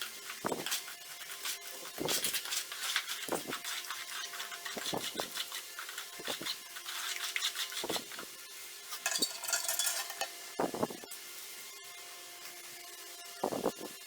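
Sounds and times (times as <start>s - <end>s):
tool scraping and knocking: 9.0s - 10.8s.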